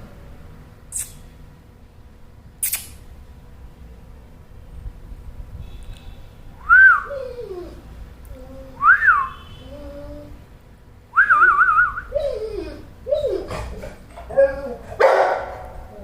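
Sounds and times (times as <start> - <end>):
dog whining: 6.7 - 10.4, 11.9 - 16.0.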